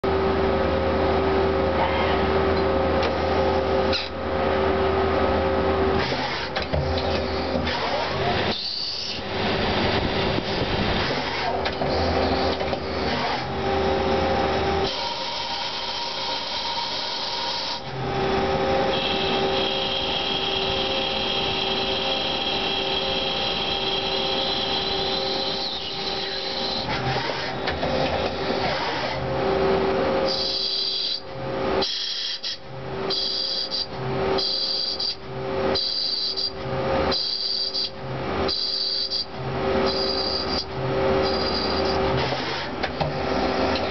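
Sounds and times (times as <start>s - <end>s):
tool cutting metal: 6.0s - 9.3s, 10.6s - 13.6s, 14.8s - 29.2s, 38.5s - 43.9s
lathe spindle humming: 8.2s - 31.4s, 32.8s - 43.9s
high whine: 12.0s - 26.9s.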